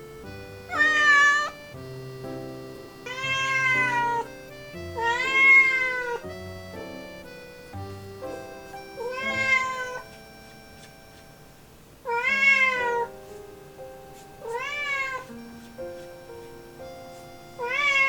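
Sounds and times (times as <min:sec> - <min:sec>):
background music: 0:00.0 - 0:11.6, 0:12.2 - 0:18.0
young cat meowing: 0:00.7 - 0:01.6, 0:03.0 - 0:04.3, 0:05.0 - 0:06.2, 0:09.0 - 0:10.0, 0:12.1 - 0:13.1, 0:14.4 - 0:15.3, 0:17.6 - 0:18.0.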